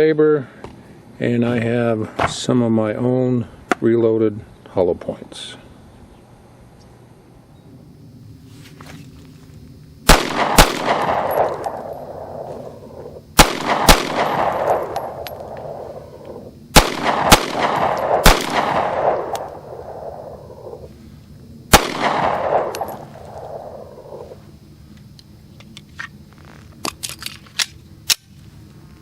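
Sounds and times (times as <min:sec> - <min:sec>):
gunshot echo: 0:10.1 - 0:20.9, 0:21.7 - 0:24.3
pistol shots: 0:10.1 - 0:20.9, 0:21.7 - 0:24.3.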